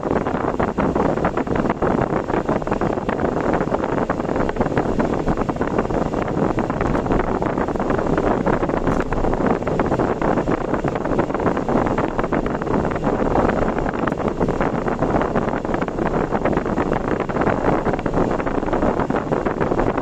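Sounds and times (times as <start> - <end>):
car road and wind noise: 0.0 - 20.0
rapid wind buffeting: 0.0 - 20.0.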